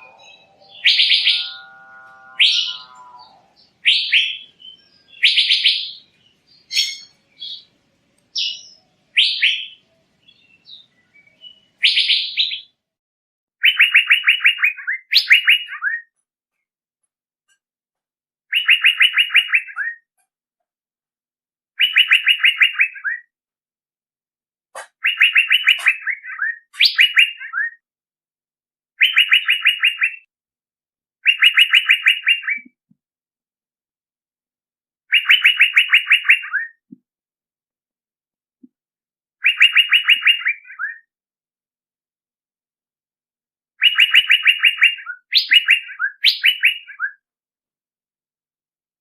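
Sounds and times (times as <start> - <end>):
bird song stuttering chirps: 0.0 - 7.7, 13.6 - 16.1, 18.5 - 20.1, 21.8 - 23.3, 25.0 - 27.8, 29.0 - 30.3, 31.2 - 32.8, 35.1 - 36.8, 39.4 - 41.1, 43.8 - 47.2.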